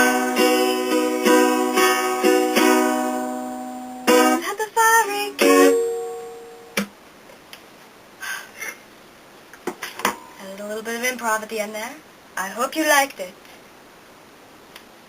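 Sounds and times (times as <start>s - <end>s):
person singing: 0.0s - 6.2s
plucked string instrument: 0.0s - 6.9s.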